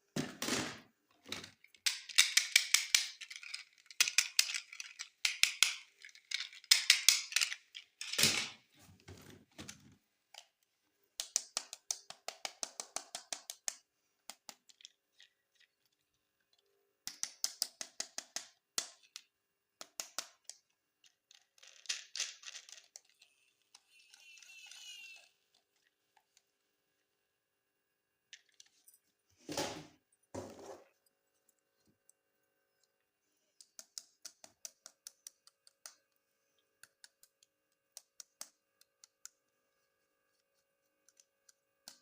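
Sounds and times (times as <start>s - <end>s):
plastic toy pieces clicking: 1.4s - 8.6s, 11.2s - 16.1s, 17.0s - 25.3s, 33.6s - 36.0s.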